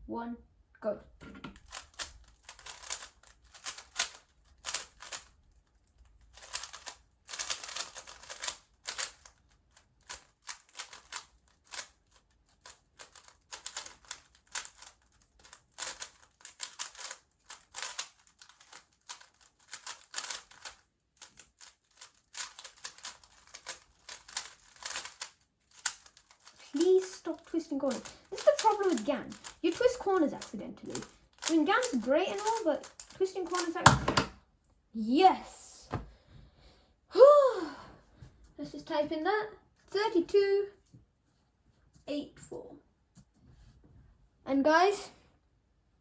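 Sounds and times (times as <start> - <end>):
puzzle cube plastic clicking: 1.6 - 34.3.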